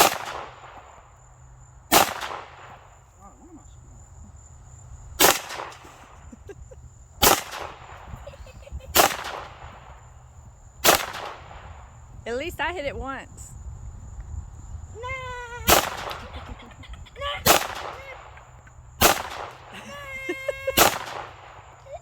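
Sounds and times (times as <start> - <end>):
gunshots with echo: 0.0 - 1.0, 1.9 - 2.9, 5.2 - 6.3, 7.2 - 8.0, 8.9 - 10.0, 10.8 - 11.8, 15.7 - 16.4, 17.4 - 18.4, 19.0 - 19.7, 20.8 - 21.6.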